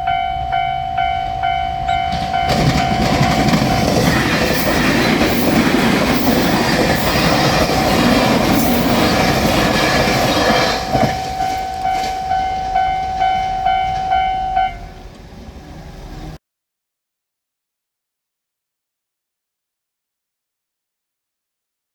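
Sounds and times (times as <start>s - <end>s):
electronic crossing bell: 0.0s - 4.2s, 10.7s - 15.0s
train running noise: 0.0s - 16.4s.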